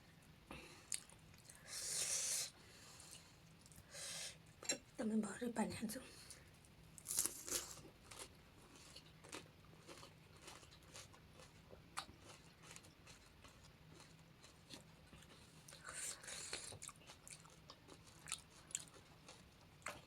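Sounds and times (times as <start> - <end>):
crisp food crunching: 7.0 - 20.0.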